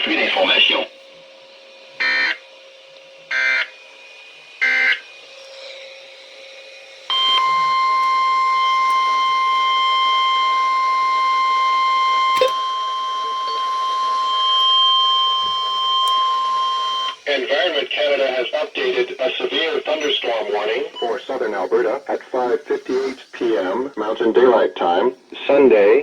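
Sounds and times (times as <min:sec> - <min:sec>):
steady warning alarm tone: 0:00.0 - 0:25.8
click: 0:12.4 - 0:12.6
buzzy digital data bursts: 0:15.2 - 0:26.0.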